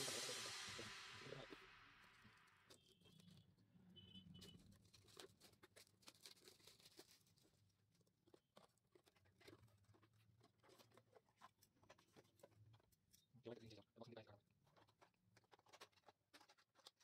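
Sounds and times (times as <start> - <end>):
cardboard and plastic packaging rustling: 4.4 - 13.2.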